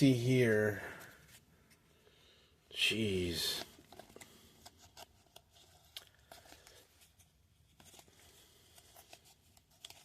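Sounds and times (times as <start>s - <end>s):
trading cards clicking and rustling: 3.1s - 10.0s.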